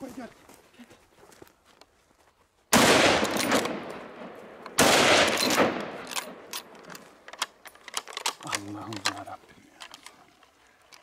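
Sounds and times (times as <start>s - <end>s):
gunshots echoing: 2.7s - 6.8s.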